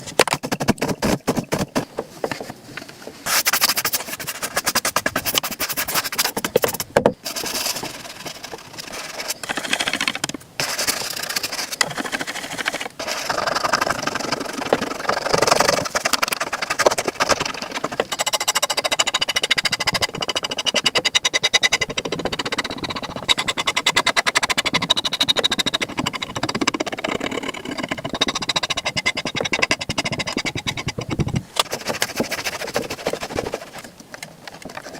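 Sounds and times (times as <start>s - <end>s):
brush scrubbing leather boot: 3.2s - 9.5s, 10.6s - 17.8s, 31.6s - 33.9s.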